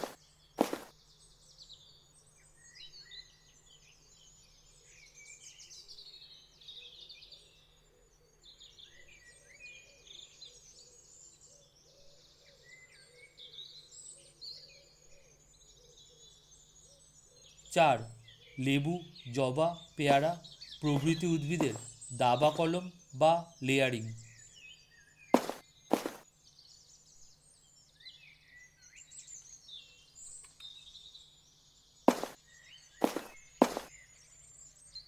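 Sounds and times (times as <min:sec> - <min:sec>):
small birds chirping: 0:00.0 - 0:35.0.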